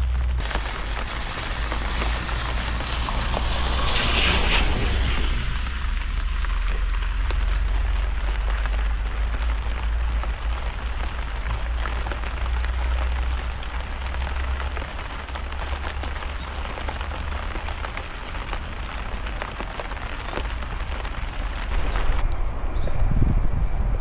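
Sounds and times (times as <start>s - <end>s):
low rumble: 0.0s - 14.6s, 20.9s - 24.0s
heavy rain falling: 0.0s - 22.6s.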